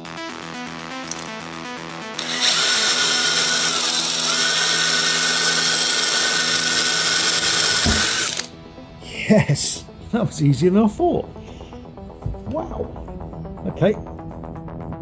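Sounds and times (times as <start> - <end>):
power drill whining: 1.1 - 1.4, 2.2 - 8.5.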